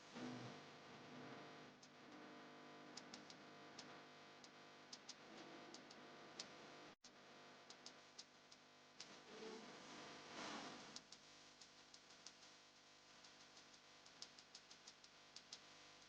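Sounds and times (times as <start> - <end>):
faint sharp clicks: 3.0 - 6.6, 7.7 - 9.2, 10.9 - 12.6, 13.2 - 16.0.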